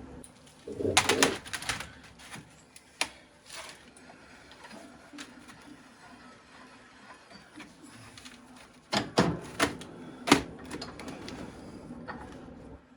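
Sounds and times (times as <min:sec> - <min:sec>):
keyboard keys clattering: 0:00.5 - 0:02.4.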